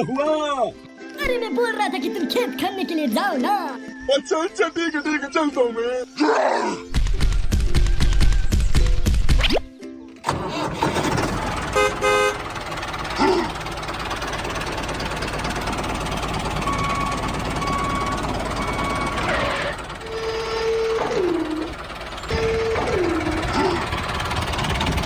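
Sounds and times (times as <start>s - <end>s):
tractor engine running: 7.0s - 9.4s, 10.2s - 25.0s
horn toot: 11.6s - 12.6s, 22.3s - 23.9s
falling tones: 16.6s - 24.6s.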